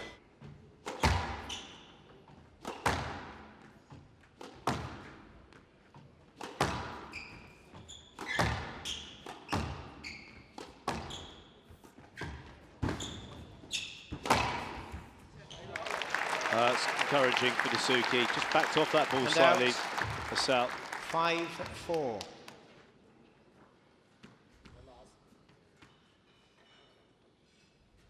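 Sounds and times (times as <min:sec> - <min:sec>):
squash ball hitting rackets and walls: 0:00.8 - 0:05.6, 0:06.3 - 0:15.1
shoes squeaking on court: 0:06.7 - 0:14.4.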